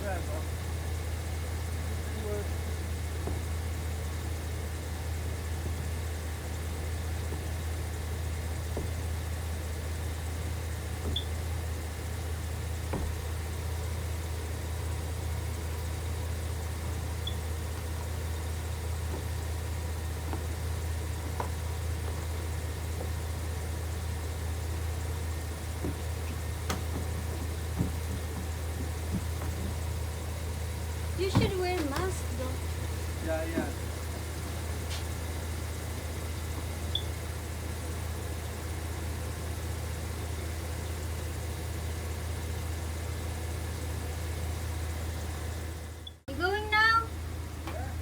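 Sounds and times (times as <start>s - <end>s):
vehicle engine idling: 0.0s - 48.0s.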